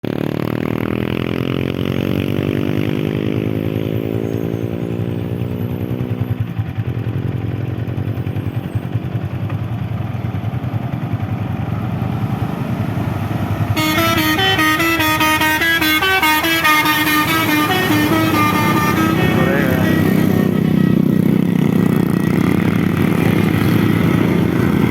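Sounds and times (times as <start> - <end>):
heavy diesel engine revving: 10.7 - 24.9.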